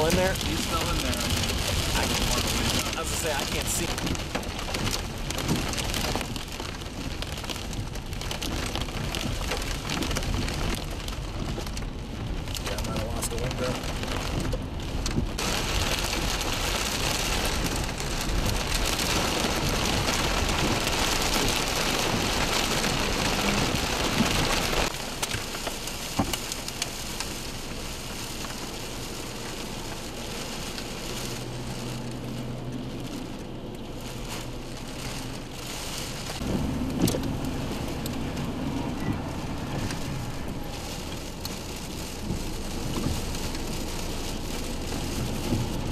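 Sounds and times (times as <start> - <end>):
hail and rain pelting a vehicle: 0.0 - 45.9.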